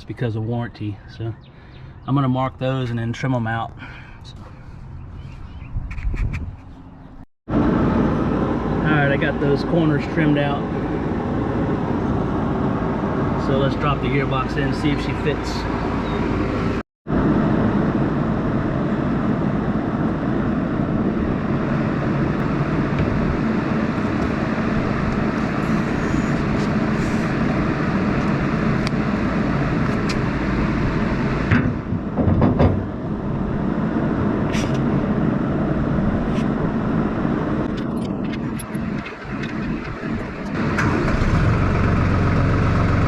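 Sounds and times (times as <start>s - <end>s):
sharp knocks: 31.5s - 32.8s
engine idling: 37.6s - 43.0s.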